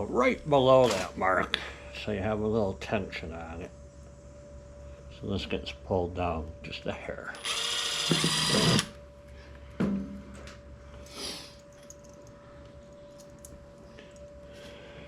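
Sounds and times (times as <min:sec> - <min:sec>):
faint steady hum: 0:00.0 - 0:15.0
power drill running: 0:07.4 - 0:09.0.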